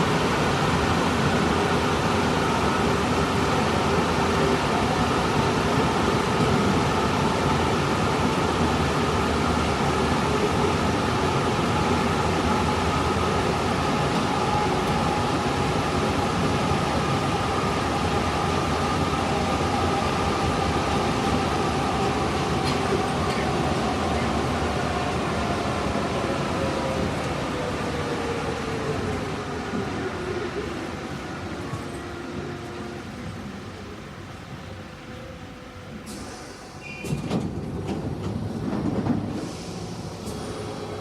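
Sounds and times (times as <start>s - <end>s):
subway train rumble: 0.0s - 41.0s.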